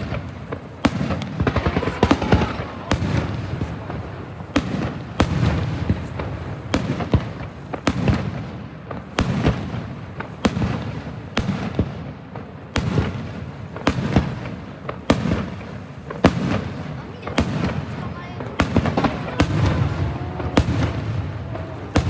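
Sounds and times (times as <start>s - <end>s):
fireworks bursting with bangs: 0.0s - 22.0s
low rumbling echoes: 1.4s - 6.8s, 17.5s - 22.0s.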